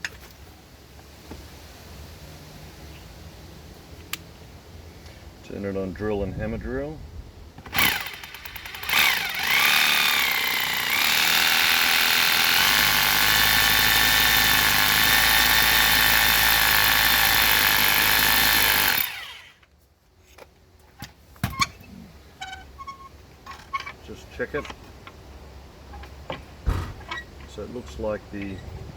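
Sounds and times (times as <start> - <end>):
hammer drill boring into concrete: 7.7 - 19.6.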